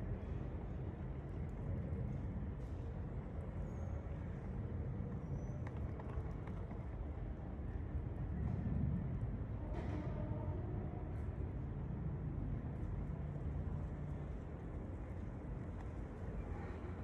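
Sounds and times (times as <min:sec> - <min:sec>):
low rumble of breeze: 0:00.0 - 0:17.0.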